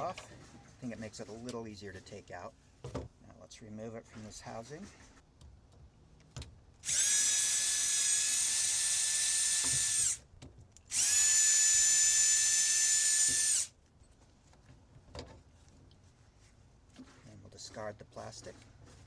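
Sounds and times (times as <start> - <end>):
drill-driver high whine: 6.8 - 10.2, 10.9 - 13.7.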